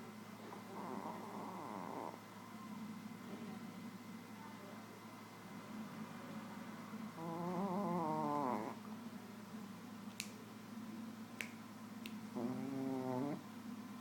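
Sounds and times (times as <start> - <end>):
dog snoring: 0.4 - 2.2, 7.1 - 8.8, 12.3 - 13.4.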